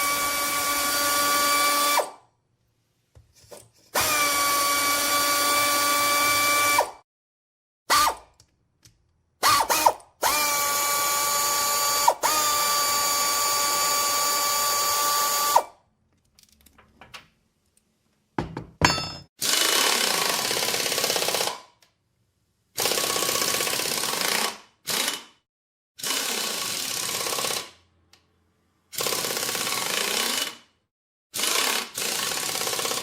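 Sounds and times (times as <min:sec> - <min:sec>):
electric drill bursts: 0:00.0 - 0:02.1, 0:04.0 - 0:06.9, 0:09.4 - 0:15.7.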